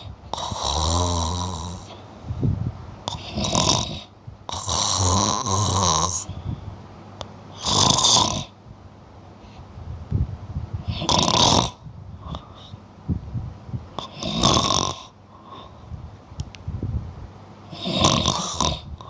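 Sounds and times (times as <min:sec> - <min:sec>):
person snoring: 0:00.0 - 0:02.0, 0:03.1 - 0:06.4, 0:07.5 - 0:08.6, 0:10.8 - 0:12.7, 0:14.0 - 0:15.8, 0:17.7 - 0:19.0.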